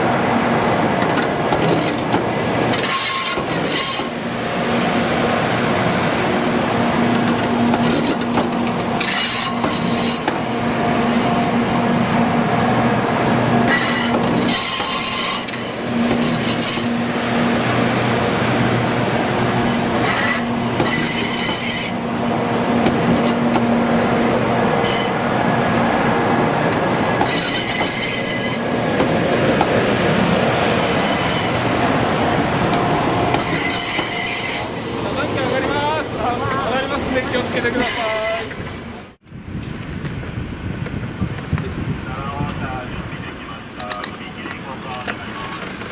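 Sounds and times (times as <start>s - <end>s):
train running noise: 0.0s - 45.9s
train wheels squealing on rails: 1.1s - 4.2s, 7.2s - 12.7s, 13.7s - 17.0s, 19.6s - 25.2s, 26.7s - 29.7s, 30.8s - 31.7s, 32.8s - 39.1s.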